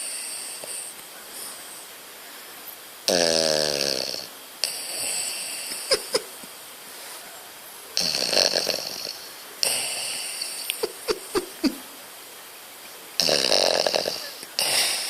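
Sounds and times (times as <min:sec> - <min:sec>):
soft hissing breath: 0:00.0 - 0:15.0
dog snoring: 0:03.1 - 0:06.0, 0:08.0 - 0:11.5, 0:13.2 - 0:15.0.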